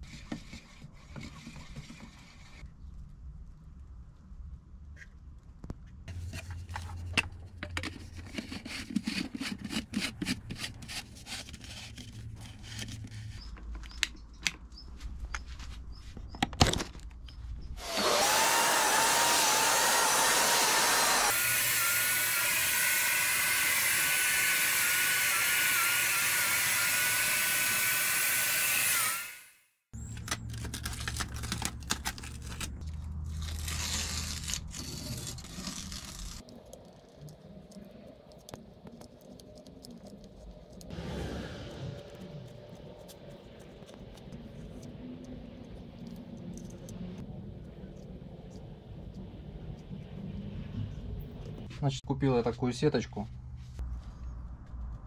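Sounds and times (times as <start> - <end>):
power tool whining: 17.8 - 29.6.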